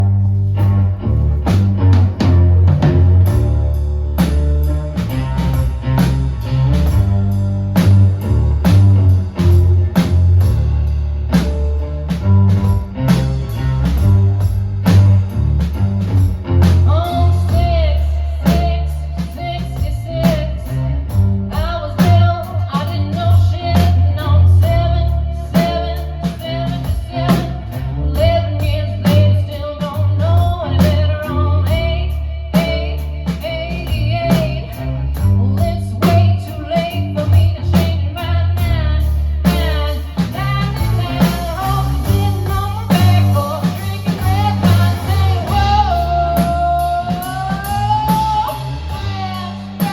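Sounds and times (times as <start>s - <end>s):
guitar bending melodic line: 0.0s - 18.5s
blues rock band playing: 0.0s - 49.9s.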